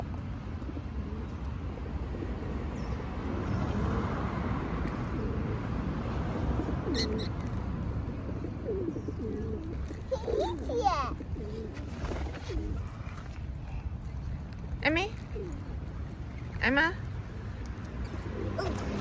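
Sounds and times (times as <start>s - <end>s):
birds calling low and wavering: 6.6s - 7.5s, 8.1s - 13.3s.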